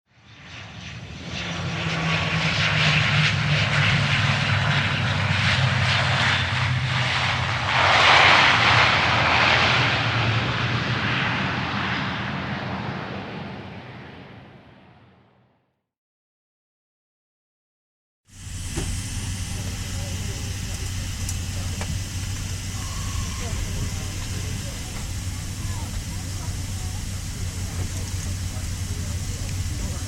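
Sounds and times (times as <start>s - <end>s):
airplane flying past: 0.1s - 15.6s, 18.3s - 30.0s.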